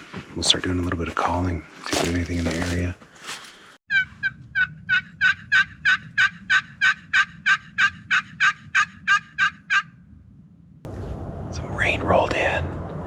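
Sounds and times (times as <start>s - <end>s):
turkey call hen yelps: 3.9s - 10.0s.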